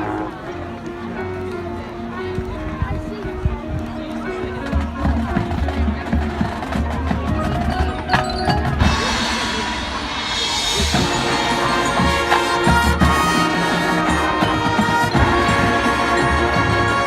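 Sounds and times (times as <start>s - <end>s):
marching band playing: 4.4s - 17.0s.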